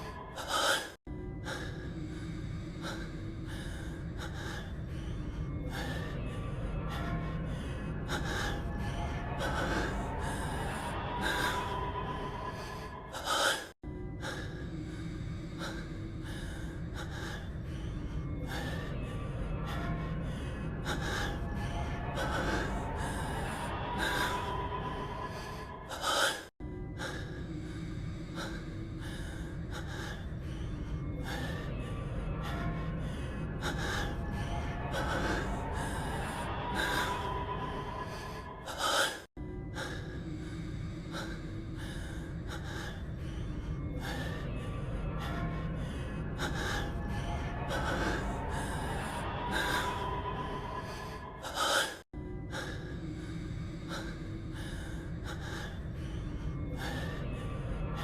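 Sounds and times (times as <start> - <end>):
man breathing heavily and gasping: 0.0 - 6.2
background music: 0.0 - 58.0.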